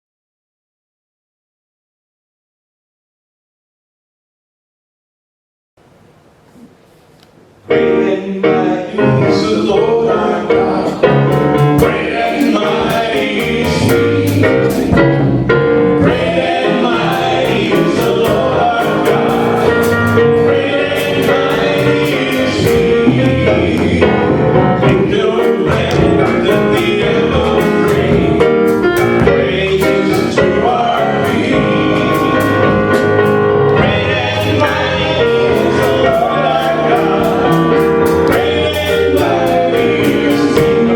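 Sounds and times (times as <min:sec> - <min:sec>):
gospel song with singers and band: 0:07.7 - 0:40.9
drums: 0:10.9 - 0:40.9.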